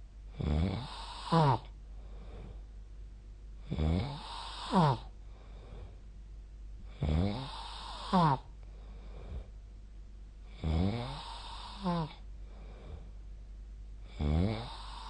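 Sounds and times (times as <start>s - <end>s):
person snoring: 0.4s - 2.6s, 3.6s - 5.1s, 6.9s - 8.5s, 10.5s - 13.1s, 14.0s - 15.0s.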